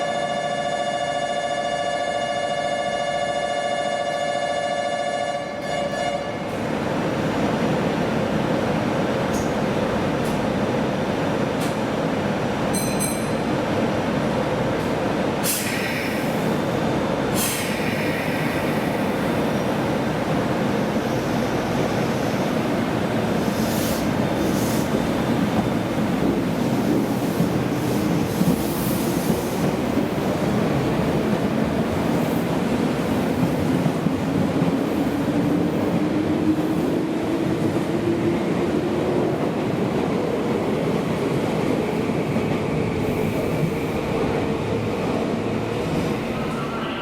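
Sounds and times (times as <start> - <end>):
electric train rumbling: 4.2 - 47.0
short sharp hisses: 15.4 - 16.3, 17.4 - 19.1, 23.4 - 24.9.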